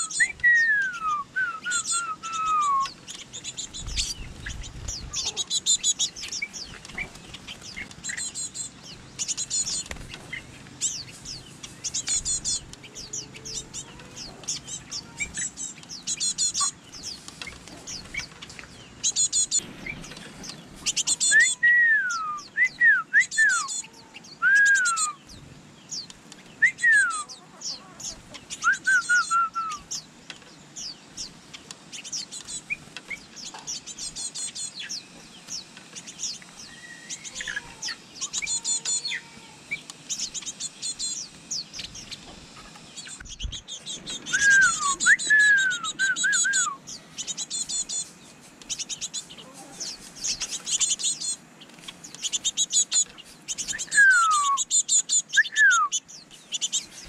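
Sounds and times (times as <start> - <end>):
high bird chirps: 0.0 - 30.1, 30.8 - 57.0
downward sliding bird whistles: 28.6 - 29.8, 44.2 - 46.8, 53.7 - 54.7.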